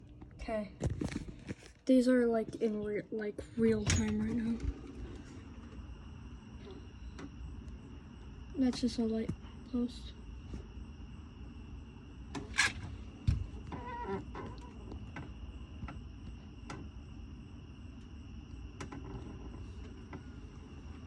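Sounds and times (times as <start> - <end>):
night insects trilling: 1.0 - 21.0.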